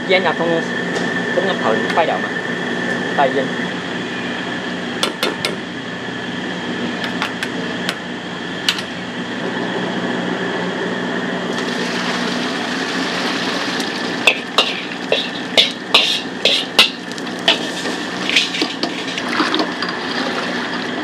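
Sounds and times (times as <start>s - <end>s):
steady background roar: 0.0s - 20.0s
food sizzling in wok: 11.5s - 19.3s
metal spatula striking wok: 14.3s - 18.8s.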